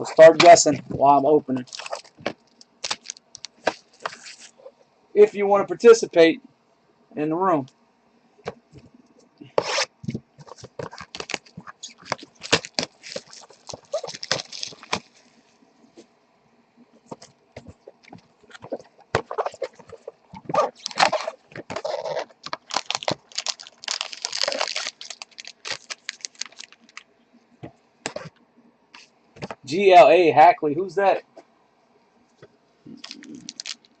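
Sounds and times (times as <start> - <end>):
plastic wrapping crinkling: 1.6 - 4.7, 9.5 - 15.5, 17.0 - 27.1, 33.0 - 34.0.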